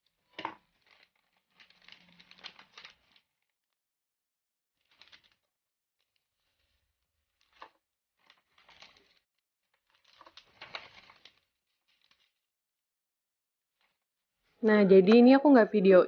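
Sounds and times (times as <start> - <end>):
plastic packaging crinkling: 0.4 - 3.4, 4.8 - 5.5, 6.3 - 9.2, 9.8 - 12.5.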